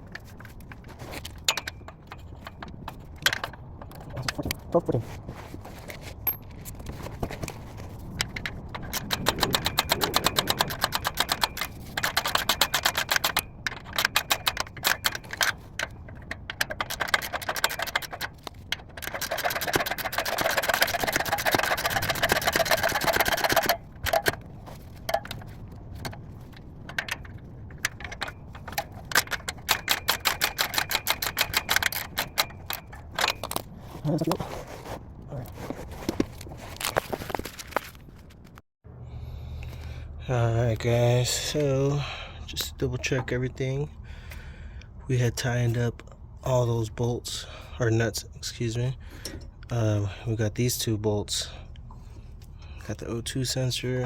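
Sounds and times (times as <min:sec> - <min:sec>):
socket ratchet clicking: 0:08.2 - 0:24.4, 0:26.8 - 0:33.5.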